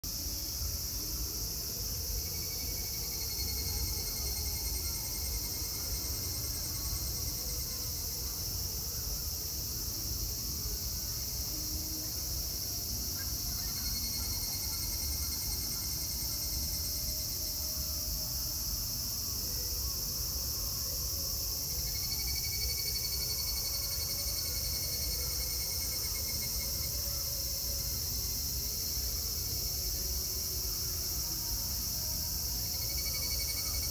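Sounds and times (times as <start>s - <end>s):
cicadas chorus: 0.0s - 33.9s
evening cicada pulsing call: 0.0s - 33.9s.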